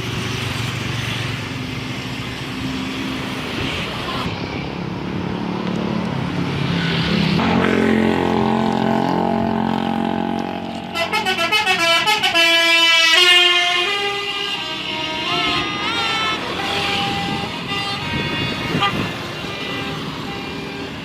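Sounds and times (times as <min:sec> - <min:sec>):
multi-tone bus horn: 0:07.4 - 0:21.0.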